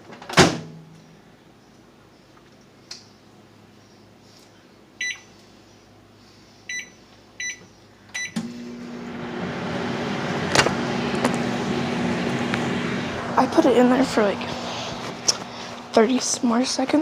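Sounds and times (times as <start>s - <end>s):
microwave keypad beeping: 5.0s - 5.3s, 6.7s - 8.4s
microwave oven humming: 5.0s - 17.0s.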